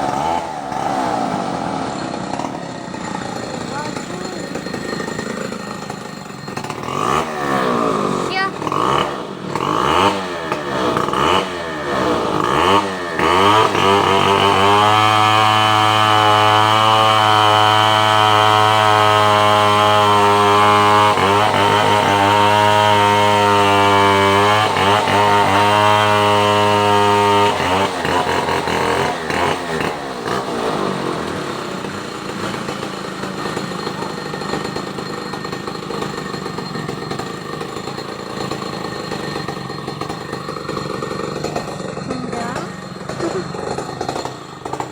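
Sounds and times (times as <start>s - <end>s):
small engine revving: 0.0s - 44.9s.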